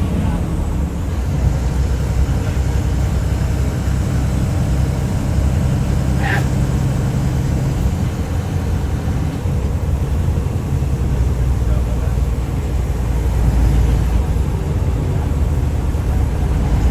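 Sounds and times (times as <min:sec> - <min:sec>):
vehicle rumble: 0:00.0 - 0:16.9.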